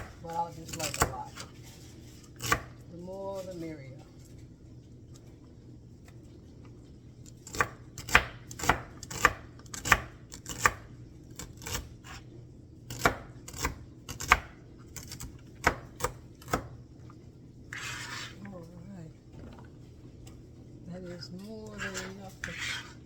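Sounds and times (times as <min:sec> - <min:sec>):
knife chopping on cutting board: 0:02.4 - 0:02.8, 0:07.4 - 0:12.2, 0:12.9 - 0:16.7, 0:21.8 - 0:23.0.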